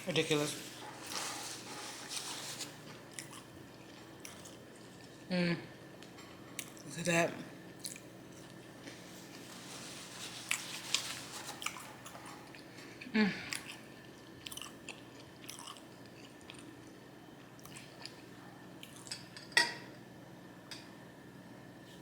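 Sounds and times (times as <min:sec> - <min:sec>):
person chewing and biting food: 0:02.6 - 0:05.2, 0:10.4 - 0:19.1.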